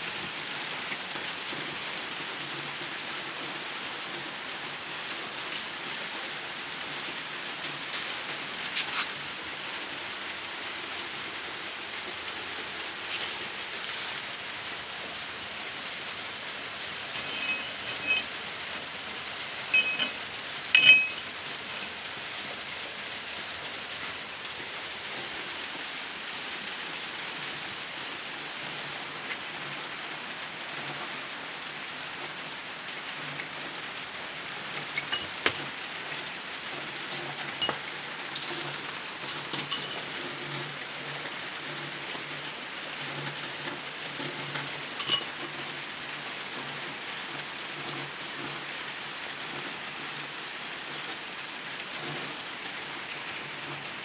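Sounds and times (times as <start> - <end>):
rain falling on a surface: 0.0 - 17.3, 18.3 - 54.0
sharp clinks: 17.1 - 18.3, 19.7 - 21.3.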